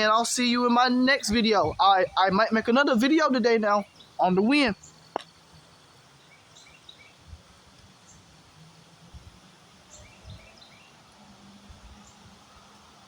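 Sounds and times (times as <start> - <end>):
wind bumping on microphone: 0.0 - 2.8, 10.0 - 10.7
faint bird chirps: 1.2 - 8.4.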